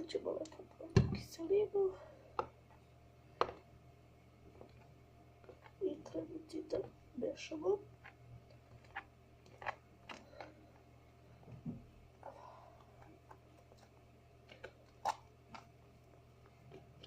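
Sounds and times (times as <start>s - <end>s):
faint low hum: 0.0s - 17.0s
slime being stirred: 4.4s - 10.9s.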